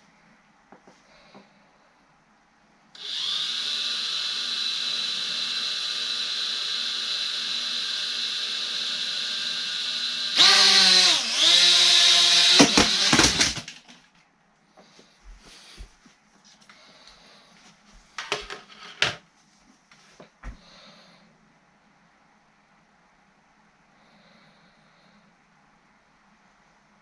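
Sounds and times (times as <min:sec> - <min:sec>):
drone motors whining: 0:03.0 - 0:13.6.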